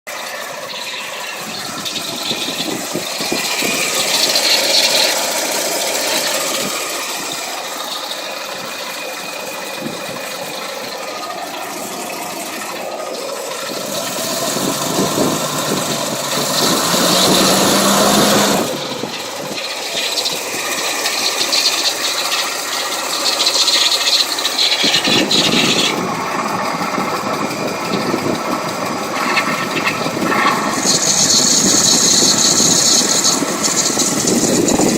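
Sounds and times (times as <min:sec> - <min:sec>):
engine running: 0:00.0 - 0:34.9
weird mechanical noise: 0:00.1 - 0:34.9.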